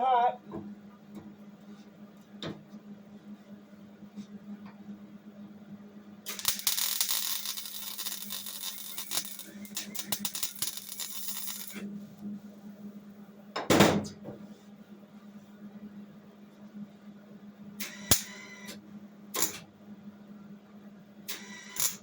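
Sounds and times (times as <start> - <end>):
steady low hum: 0.0 - 21.3
welder arc crackling on metal: 6.3 - 11.9.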